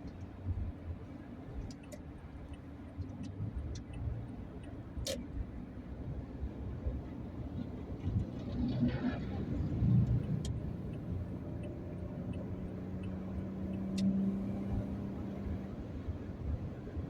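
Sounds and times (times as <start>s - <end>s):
vehicle rumble from inside: 0.0s - 17.0s.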